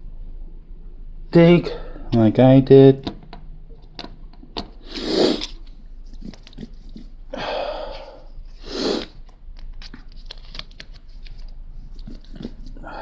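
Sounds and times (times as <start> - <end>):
sticker sheet crinkling: 9.8 - 12.7.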